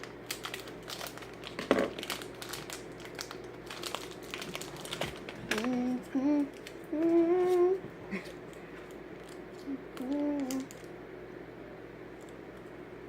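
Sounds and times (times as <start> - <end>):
plastic wrapper crinkling: 0.0 - 10.9
person humming: 5.4 - 8.4, 9.6 - 10.8.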